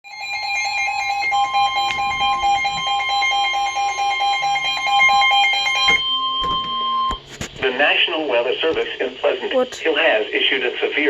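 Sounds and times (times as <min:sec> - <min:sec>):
rapid beeping alarm: 0:00.0 - 0:07.9
steady alarm tone: 0:00.0 - 0:08.5.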